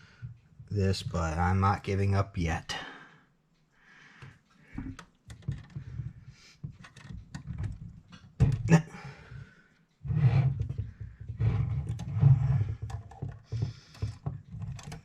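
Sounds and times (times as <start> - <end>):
metal clock parts clicking: 12.9 - 15.0.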